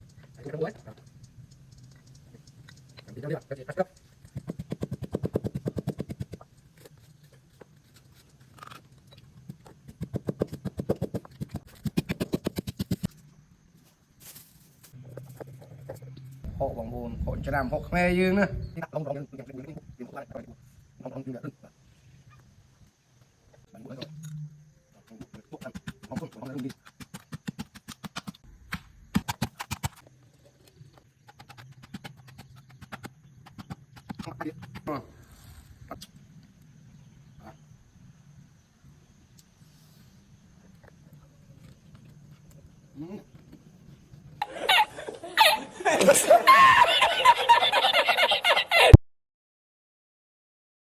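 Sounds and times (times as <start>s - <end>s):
sharp knocks or clicks: 31.3s - 34.9s.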